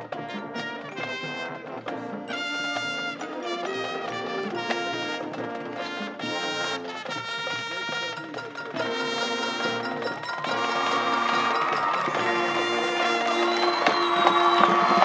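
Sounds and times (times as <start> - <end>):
brass chords: 0.0 - 15.0
marching band playing: 0.0 - 15.0
drums: 8.6 - 15.0.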